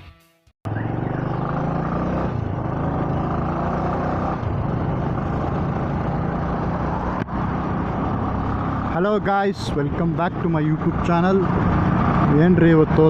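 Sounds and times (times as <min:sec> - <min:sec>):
road and wind noise: 0:00.7 - 0:13.0
vehicle engine humming: 0:00.7 - 0:13.0.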